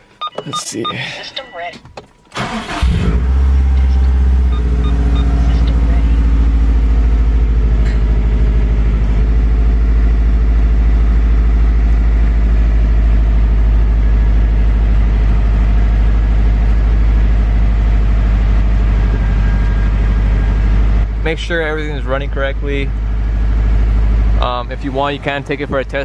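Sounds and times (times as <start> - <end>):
car engine idling: 2.0 - 26.0.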